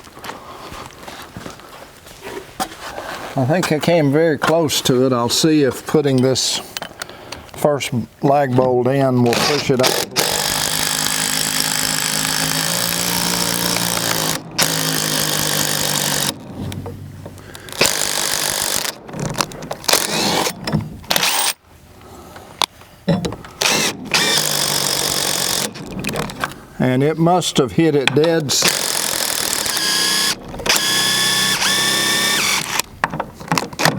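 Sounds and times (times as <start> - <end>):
power drill driving bolt into wood: 9.3 - 16.4, 17.7 - 21.6, 23.6 - 25.9, 28.6 - 32.9.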